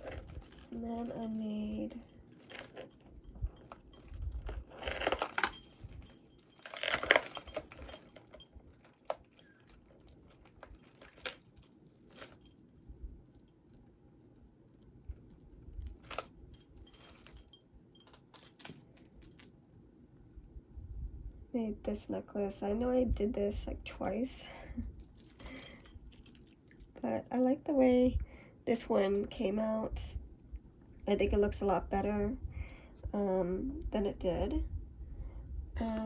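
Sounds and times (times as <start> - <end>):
beads clattering: 0.0 - 19.8, 23.6 - 26.6
beaded jewelry clicking and clinking: 0.0 - 20.6, 21.2 - 26.8.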